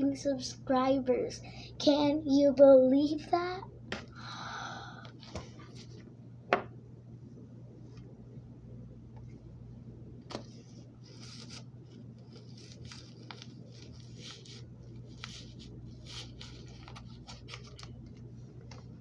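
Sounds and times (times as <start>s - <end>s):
steady low hum: 0.0s - 19.0s
paper and tape crinkling: 11.1s - 18.9s.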